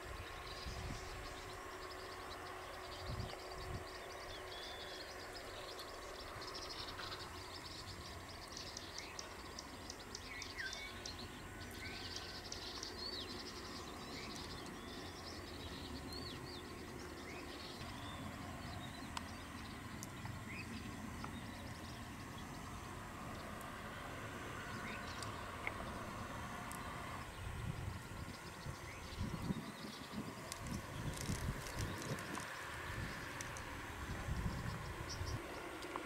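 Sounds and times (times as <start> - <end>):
birds chirping: 0.0 - 36.0
steady low background noise: 0.0 - 36.0.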